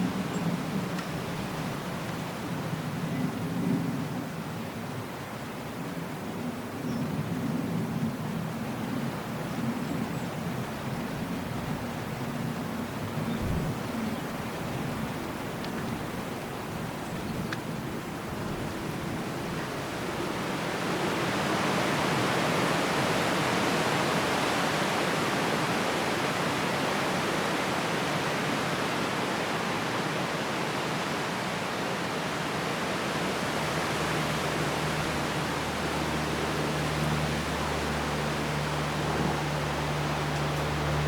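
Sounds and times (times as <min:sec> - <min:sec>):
wind rustling leaves: 0:00.0 - 0:41.0.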